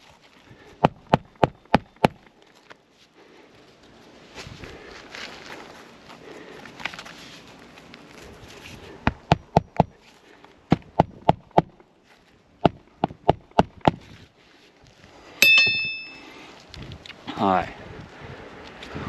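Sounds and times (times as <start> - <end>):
ringing metallic strike: 15.4 - 16.3.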